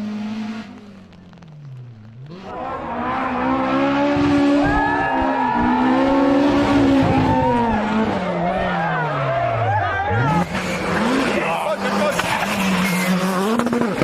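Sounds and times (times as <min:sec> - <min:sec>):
rally car engine revving: 0:00.0 - 0:14.0.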